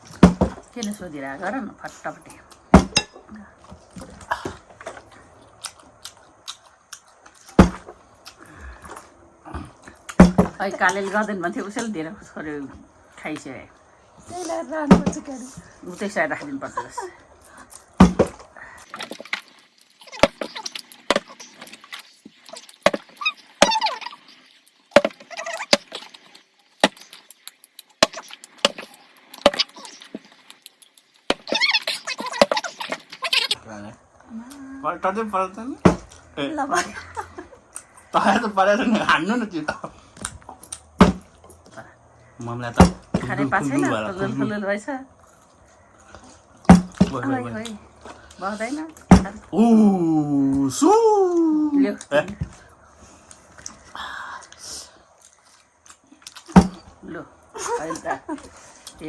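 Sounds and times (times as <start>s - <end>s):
biting and chewing food: 2.3s - 11.1s, 17.4s - 33.6s, 40.1s - 41.8s, 54.5s - 57.0s
loud thump: 18.0s - 18.4s, 35.9s - 36.1s, 41.0s - 41.2s, 42.8s - 43.2s, 49.1s - 49.4s
small crunches and clicks: 18.8s - 33.6s.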